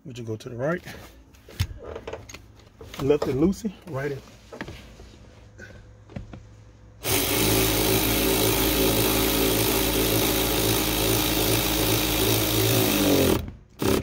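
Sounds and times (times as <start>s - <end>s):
electric ratchet running: 7.0s - 14.0s.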